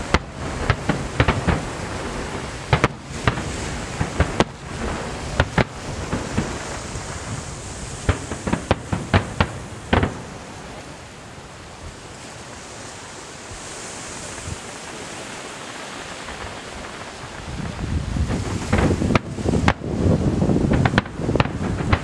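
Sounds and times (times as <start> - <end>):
fireworks bangs: 0.0 - 11.0, 15.4 - 22.0
wind-like rushing noise: 0.0 - 22.0.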